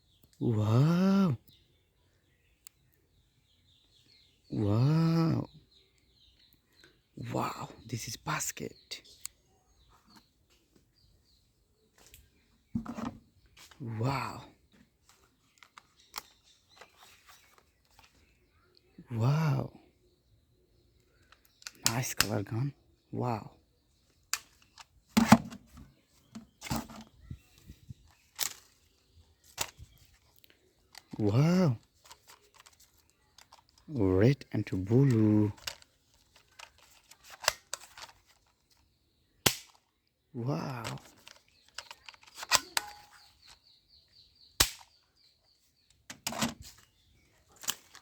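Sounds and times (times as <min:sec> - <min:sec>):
plastic toy guns clacking: 0:29.4 - 0:29.9, 0:31.8 - 0:33.9, 0:35.1 - 0:38.6, 0:39.4 - 0:39.8, 0:40.9 - 0:43.6, 0:47.5 - 0:48.0.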